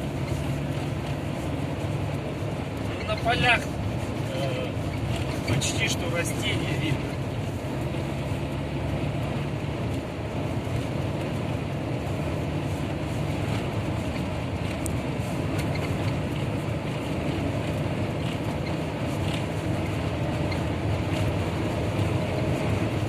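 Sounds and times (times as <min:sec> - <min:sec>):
car engine and tyre rumble: 0:00.0 - 0:23.0.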